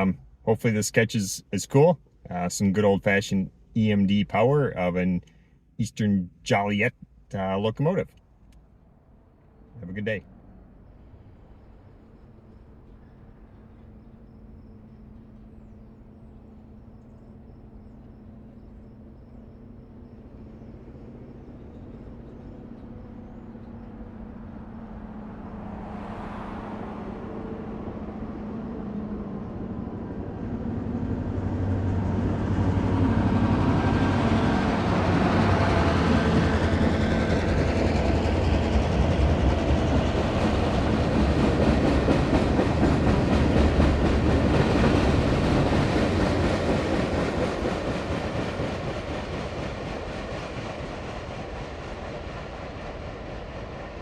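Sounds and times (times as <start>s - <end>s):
diesel locomotive engine hum: 0.0s - 54.0s
train wheels on rails: 11.0s - 54.0s.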